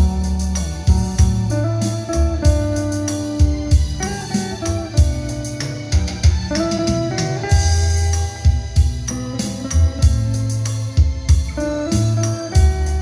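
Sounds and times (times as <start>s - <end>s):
instrumental pop music: 0.0s - 13.0s.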